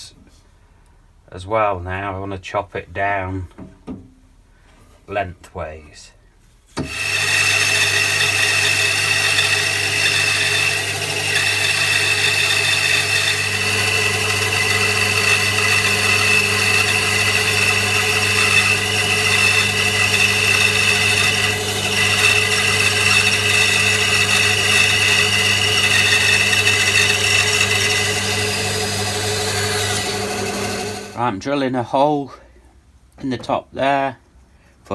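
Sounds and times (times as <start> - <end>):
electric power tool motor humming: 6.8 - 31.2.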